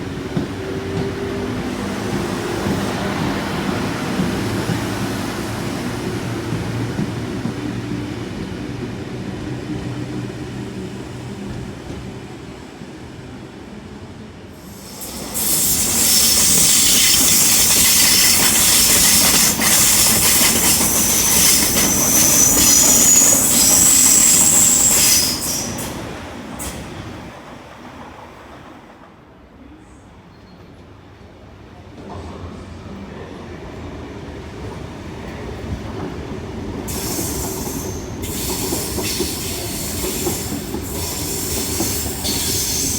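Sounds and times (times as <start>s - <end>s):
train passing close by: 0.0s - 42.9s
high-pitched wheel squeal: 15.4s - 25.8s.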